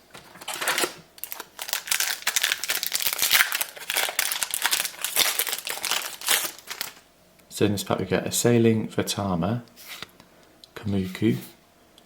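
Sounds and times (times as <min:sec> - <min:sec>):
plastic wrapper crinkling: 0:00.2 - 0:07.0.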